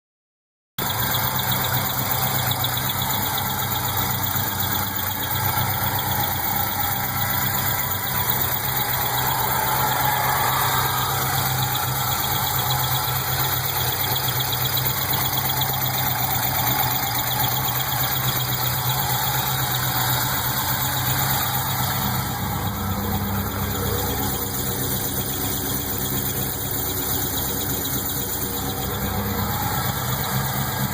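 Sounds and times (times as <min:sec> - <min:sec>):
car engine idling: 0:00.8 - 0:30.9
engine chirping: 0:00.8 - 0:30.9.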